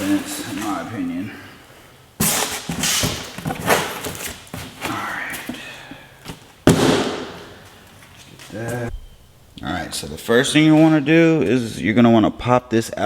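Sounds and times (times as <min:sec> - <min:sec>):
rustling and knocking objects: 0:06.2 - 0:09.1.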